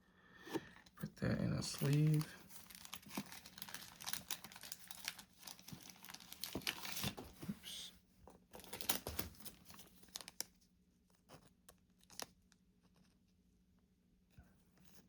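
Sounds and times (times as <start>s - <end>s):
plastic sleeve crinkling: 1.5s - 7.8s, 8.6s - 10.5s.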